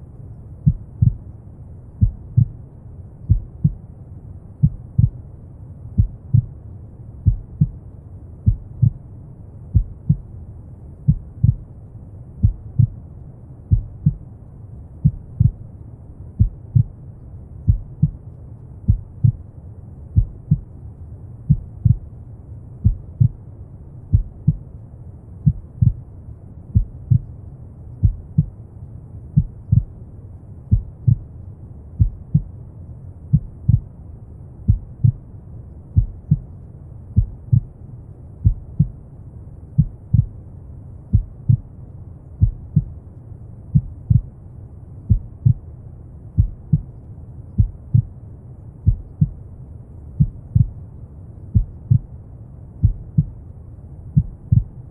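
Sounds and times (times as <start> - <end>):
low rumble of brown noise: 0.0 - 54.9
heartbeat: 0.6 - 1.3, 2.0 - 2.6, 3.2 - 3.8, 4.6 - 5.2, 6.0 - 6.6, 7.2 - 7.8, 8.4 - 9.0, 9.7 - 10.3, 11.1 - 11.7, 12.4 - 13.0, 13.7 - 14.2, 15.0 - 15.6, 16.4 - 16.9, 17.6 - 18.2, 18.9 - 19.4, 20.2 - 20.8, 21.5 - 22.1, 22.8 - 23.4, 24.1 - 24.6, 25.4 - 26.0, 26.7 - 27.3, 28.0 - 28.6, 29.4 - 30.0, 30.7 - 31.3, 32.0 - 32.5, 33.3 - 33.9, 34.7 - 35.2, 35.9 - 36.5, 37.2 - 37.8, 38.4 - 39.0, 39.8 - 40.4, 41.1 - 41.7, 42.4 - 42.9, 43.7 - 44.4, 45.1 - 45.7, 46.4 - 48.2, 48.8 - 49.4, 50.2 - 50.8, 51.5 - 52.1, 52.8 - 53.4, 54.2 - 54.8.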